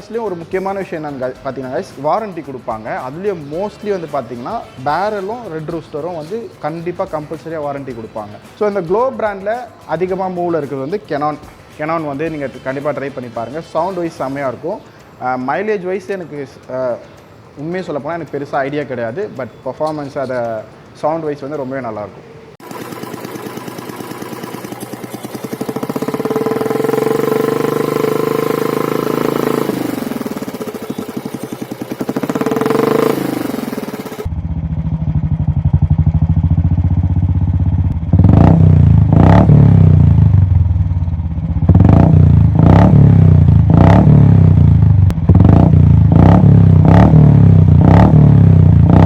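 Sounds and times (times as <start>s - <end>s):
motorcycle engine revving: 10.0s - 15.0s, 22.6s - 49.0s.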